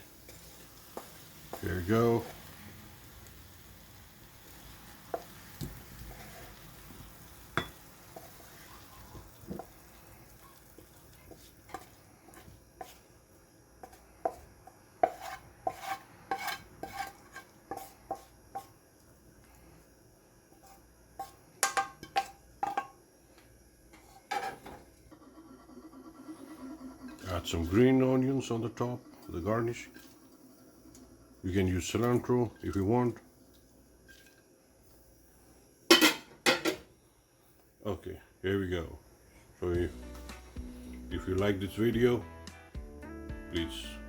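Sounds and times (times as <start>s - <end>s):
faint sizzle from pan: 0.0s - 41.2s
utensil clinking against a pan: 7.6s - 8.4s.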